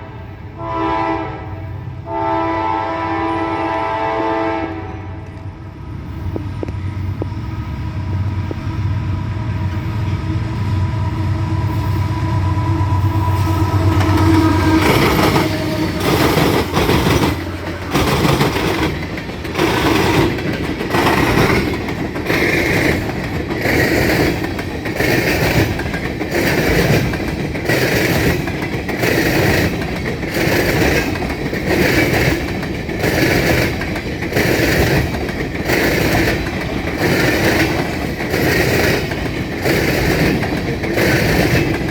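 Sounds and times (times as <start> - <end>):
diesel locomotives rumbling: 0.0 - 41.9
held horn tone: 11.0 - 19.0
train wheels clattering over rail joints: 13.3 - 41.9.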